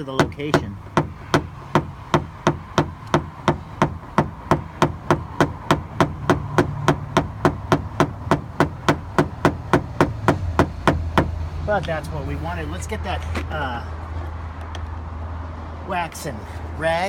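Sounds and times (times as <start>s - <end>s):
tool tapping sheet metal: 0.0s - 11.4s.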